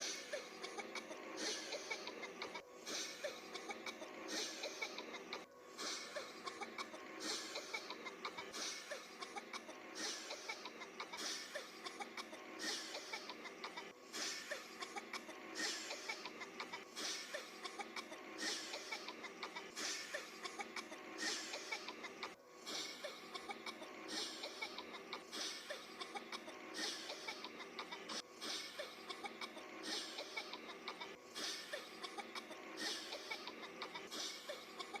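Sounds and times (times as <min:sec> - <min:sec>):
short breathy coughs: 0:02.8 - 0:05.0, 0:05.8 - 0:10.5, 0:11.2 - 0:13.2, 0:14.1 - 0:16.2, 0:17.0 - 0:17.5, 0:19.6 - 0:20.3, 0:28.1 - 0:28.9, 0:31.3 - 0:35.0.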